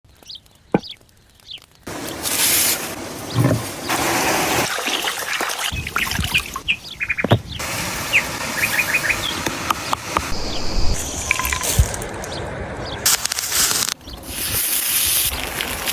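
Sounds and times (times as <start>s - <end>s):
small birds chirping: 0.1s - 1.9s, 5.7s - 13.0s.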